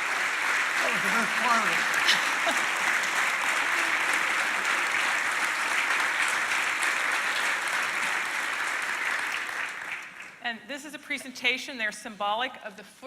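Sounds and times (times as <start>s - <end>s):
audience applauding: 0.0s - 10.4s.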